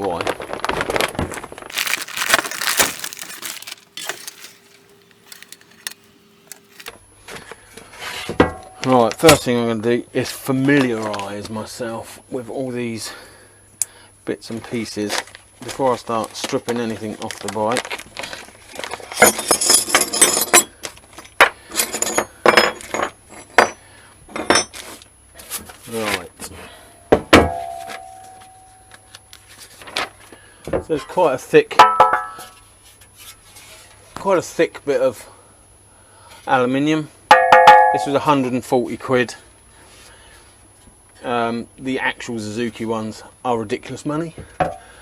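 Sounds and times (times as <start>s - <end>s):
packaging rustling: 0.3s - 6.9s
small metal parts clinking: 1.7s - 6.9s, 19.1s - 23.8s.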